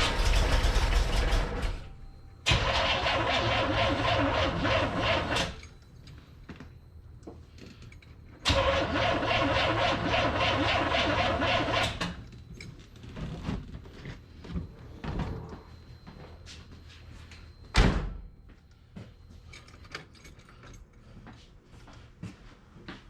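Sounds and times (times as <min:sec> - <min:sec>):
car engine cranking on starter: 0:00.0 - 0:05.6, 0:08.4 - 0:12.2.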